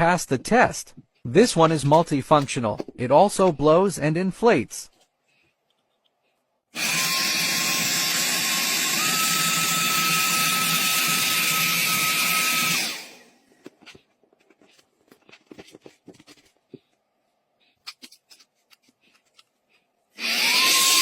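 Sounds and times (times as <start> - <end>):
handheld vacuum motor whining: 6.8 - 13.4, 20.2 - 21.0.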